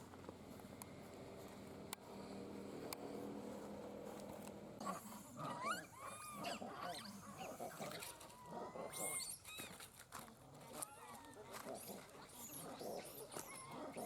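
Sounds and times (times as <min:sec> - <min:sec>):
monkeys squealing and screeching: 0:05.5 - 0:09.7.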